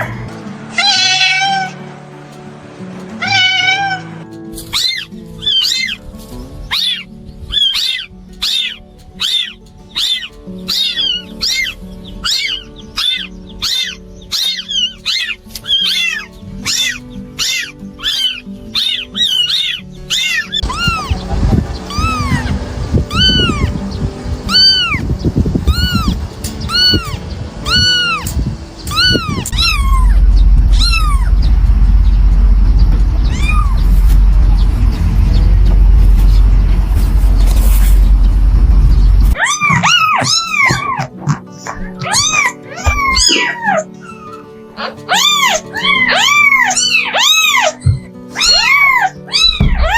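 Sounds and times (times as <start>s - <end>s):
soft background music: 0.0s - 49.9s
cat meowing: 0.7s - 1.8s, 3.2s - 6.0s, 6.7s - 23.8s, 24.5s - 25.0s, 25.7s - 31.4s, 33.2s - 33.9s, 39.4s - 49.9s
loud low rumble: 20.6s - 39.4s, 49.6s - 49.9s.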